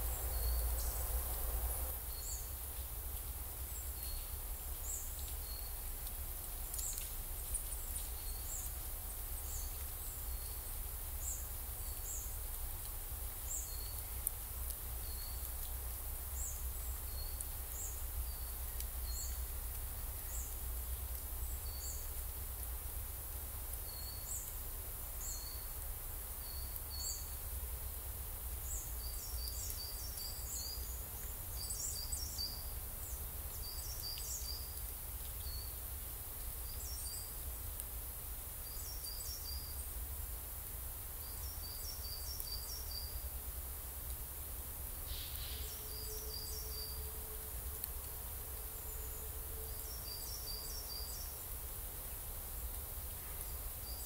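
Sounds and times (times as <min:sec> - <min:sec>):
steady low rumble: 0:00.0 - 0:02.0
songbirds chirping: 0:00.0 - 0:54.0.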